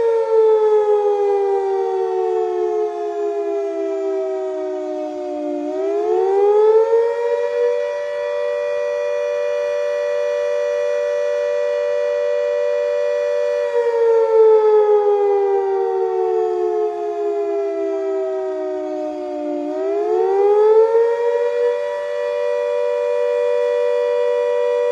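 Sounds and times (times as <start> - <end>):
fire station siren wailing: 0.0 - 24.9.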